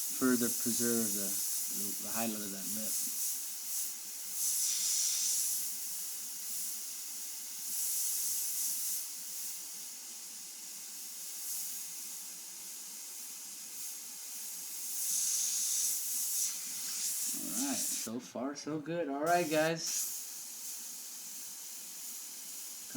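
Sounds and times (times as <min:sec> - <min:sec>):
airbrush spraying hiss: 0:00.0 - 0:18.2, 0:19.2 - 0:22.9.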